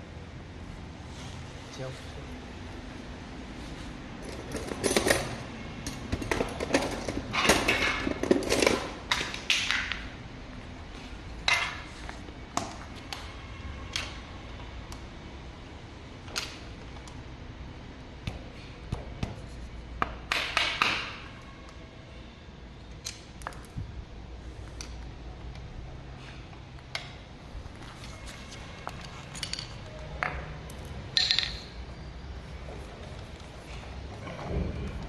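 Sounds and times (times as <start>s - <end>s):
tools clinking on metal parts: 4.3s - 9.9s, 29.0s - 31.8s.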